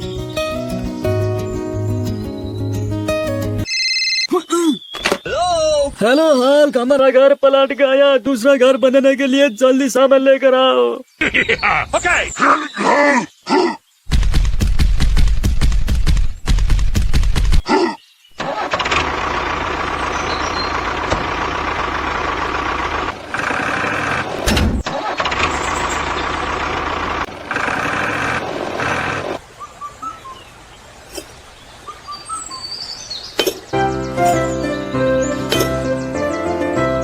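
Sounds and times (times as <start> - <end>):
vehicle engine starting and running: 18.4 - 29.4.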